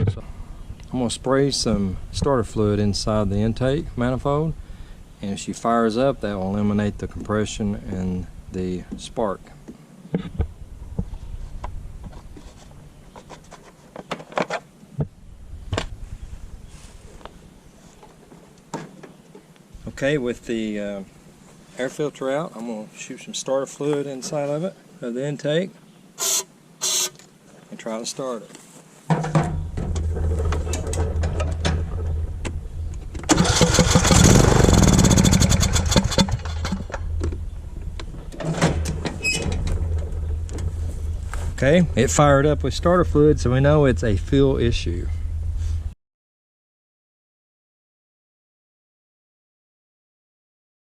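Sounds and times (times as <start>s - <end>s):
lawn mower engine cranking and running: 26.2s - 27.2s, 29.3s - 43.2s
sharp clicks and knocks: 29.1s - 34.1s, 35.1s - 40.7s.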